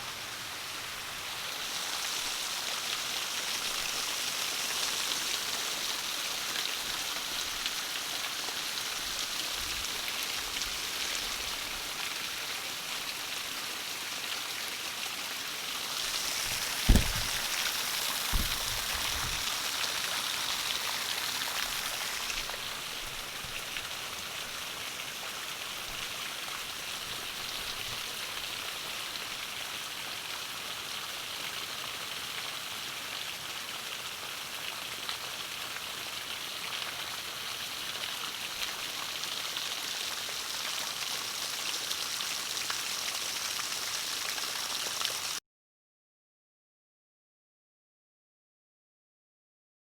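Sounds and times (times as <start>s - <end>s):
heavy rain pouring: 15.7s - 29.5s
dull thumps: 16.4s - 19.5s.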